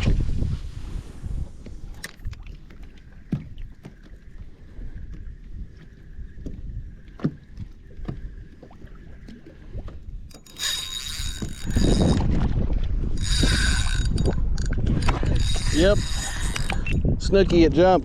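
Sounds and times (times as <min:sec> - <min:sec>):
water sloshing and splashing: 0:00.0 - 0:17.6
wind on microphone: 0:00.0 - 0:18.0
reel drag whining: 0:00.8 - 0:17.2
fishing reel cranking whine: 0:10.2 - 0:12.4, 0:13.1 - 0:17.1.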